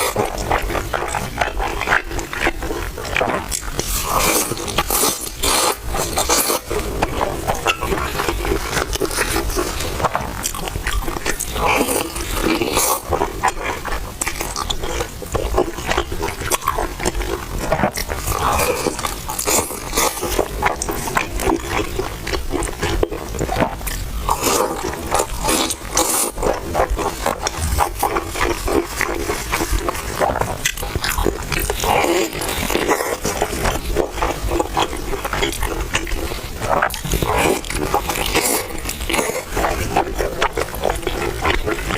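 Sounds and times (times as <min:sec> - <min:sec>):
crunching bites and wet chewing: 0:00.0 - 0:41.9.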